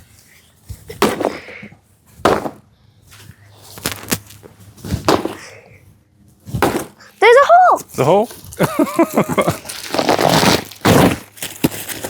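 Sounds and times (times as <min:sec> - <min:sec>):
pumpkin being smashed: 0:06.6 - 0:07.0, 0:10.0 - 0:11.7.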